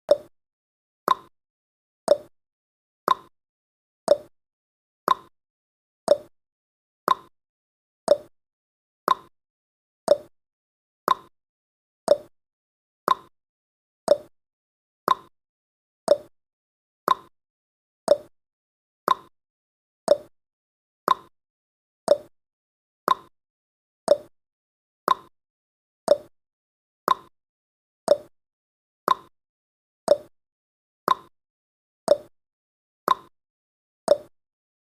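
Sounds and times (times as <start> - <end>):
timer ticking tick-tock: 0.1 - 0.3, 1.1 - 1.3, 2.1 - 2.3, 3.1 - 3.3, 4.1 - 4.3, 5.1 - 5.3, 6.1 - 6.3, 7.1 - 7.3, 8.1 - 8.3, 9.1 - 9.3, 10.1 - 10.3, 11.1 - 11.3, 12.1 - 12.3, 13.1 - 13.3, 14.1 - 14.3, 15.1 - 15.3, 16.1 - 16.3, 17.1 - 17.3, 18.1 - 18.3, 19.1 - 19.3, 20.1 - 20.3, 21.1 - 21.3, 22.1 - 22.3, 23.1 - 23.3, 24.1 - 24.3, 25.1 - 25.3, 26.1 - 26.3, 27.1 - 27.3, 28.1 - 28.3, 29.1 - 29.3, 30.1 - 30.3, 31.1 - 31.3, 32.1 - 32.3, 33.1 - 33.3, 34.1 - 34.3.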